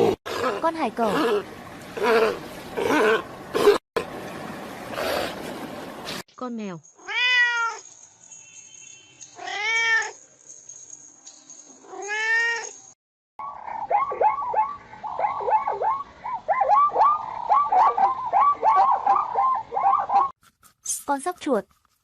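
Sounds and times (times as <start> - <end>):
cat meowing: 7.0 - 7.8, 9.4 - 10.2.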